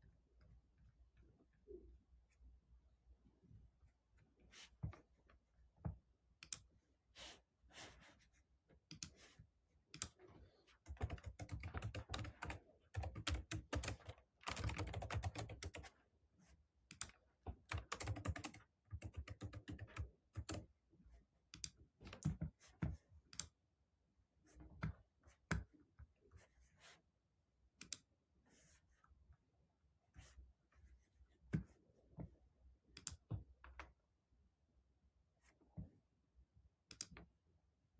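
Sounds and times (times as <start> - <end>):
typing on computer keyboard: 10.8 - 15.9, 16.9 - 20.7.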